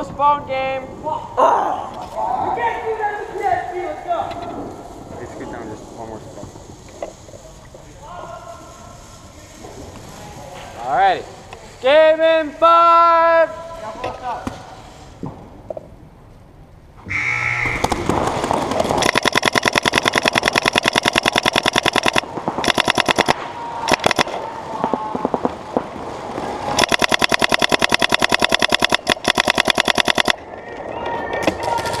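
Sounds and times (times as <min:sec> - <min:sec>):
paintball marker firing rapidly: 0:18.9 - 0:24.4, 0:26.8 - 0:30.4.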